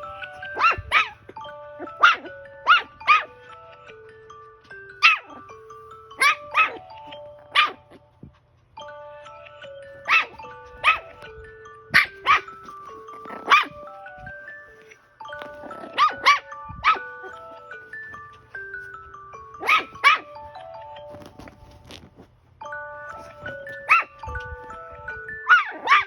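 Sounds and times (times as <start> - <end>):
alarm chiming melody: 0.0 - 21.9, 22.6 - 26.0
puppy yapping: 0.1 - 3.5, 5.0 - 5.6, 6.2 - 8.1, 10.0 - 11.3, 11.9 - 13.9, 14.8 - 20.6, 23.2 - 24.7, 25.4 - 26.0.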